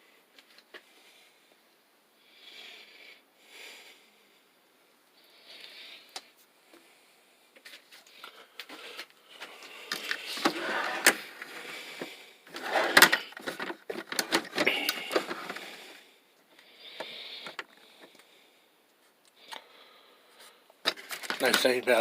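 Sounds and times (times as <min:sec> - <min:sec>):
metal drawers sliding on runners: 0:10.4 - 0:11.6, 0:12.5 - 0:13.6.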